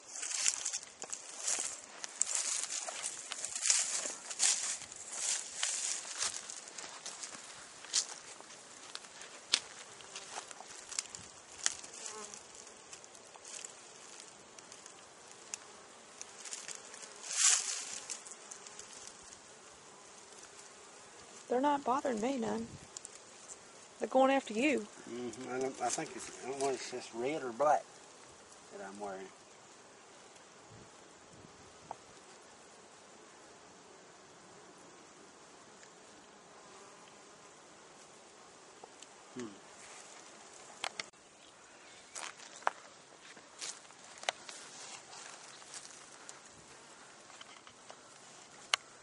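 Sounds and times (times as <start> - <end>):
background hiss: 0.0 - 49.0
honey bees buzzing: 0.0 - 49.0.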